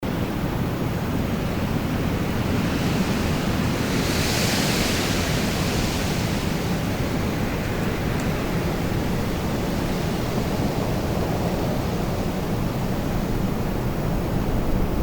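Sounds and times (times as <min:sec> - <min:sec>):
storm wind blowing: 0:00.2 - 0:15.0.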